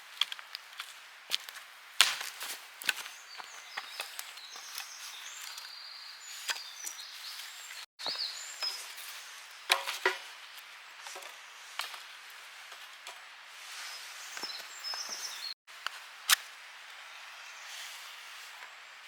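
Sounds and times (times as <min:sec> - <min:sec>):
wood cracking and knocking: 0:09.7 - 0:10.2.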